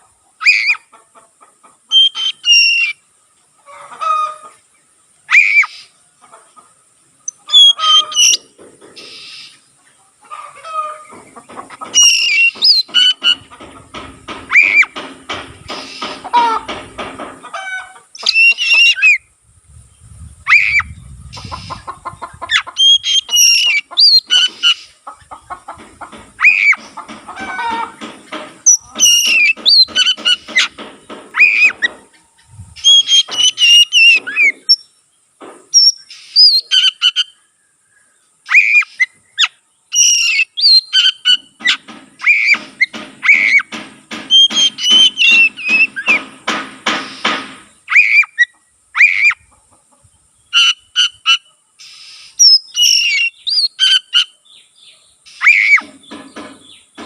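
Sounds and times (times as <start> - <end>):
songbird whistling and chattering: 1.9 - 3.0, 5.3 - 6.0, 7.2 - 9.6, 11.9 - 13.5, 14.5 - 15.0, 18.2 - 19.3, 20.0 - 21.9, 22.5 - 25.0, 26.4 - 27.1, 28.6 - 30.8, 31.4 - 34.9, 35.7 - 37.4, 38.5 - 46.2, 46.9 - 49.5, 50.5 - 54.4, 55.3 - 56.9.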